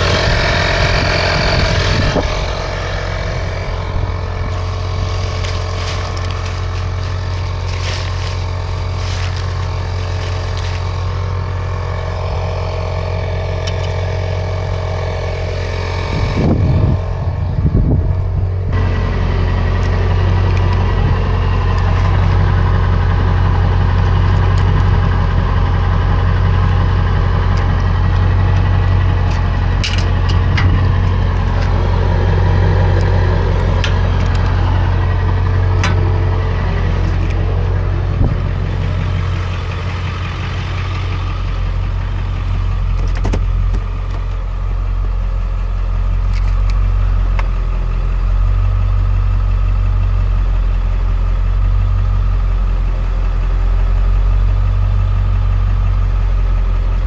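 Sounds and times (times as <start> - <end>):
road noise: 0.0 - 57.0
truck engine running: 0.0 - 57.0
sharp clicks and knocks: 42.3 - 44.5, 46.3 - 46.8.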